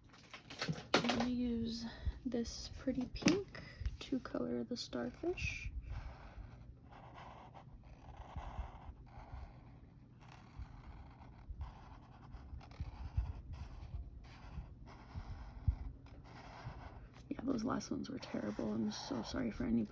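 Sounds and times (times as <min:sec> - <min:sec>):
pen scratching on paper: 0:04.0 - 0:19.9.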